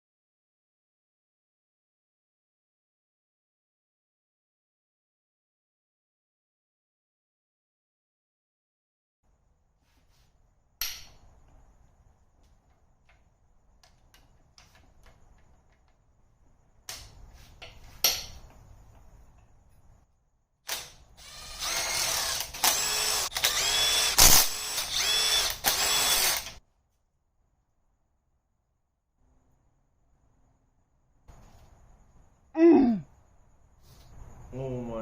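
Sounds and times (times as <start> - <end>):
power tool running in pulses: 20.7 - 26.6.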